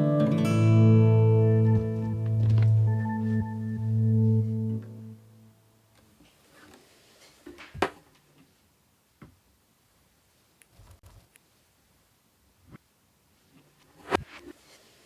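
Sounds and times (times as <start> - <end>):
acoustic guitar chord ringing: 0.0 - 5.6.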